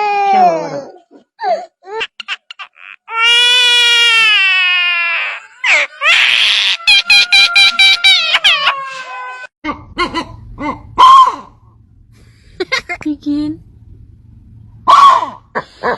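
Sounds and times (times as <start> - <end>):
parrot imitating crying baby: 1.9 - 9.5.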